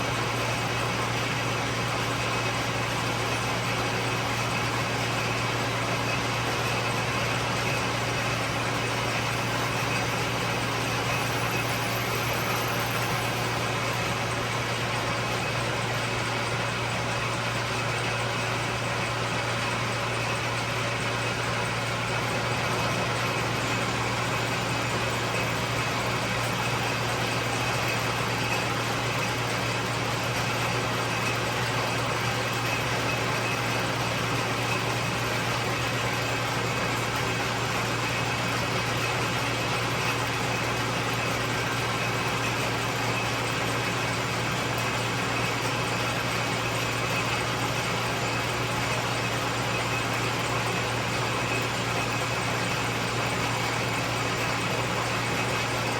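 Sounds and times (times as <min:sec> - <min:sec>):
lathe motor and gearing whirring: 0:00.0 - 0:55.9.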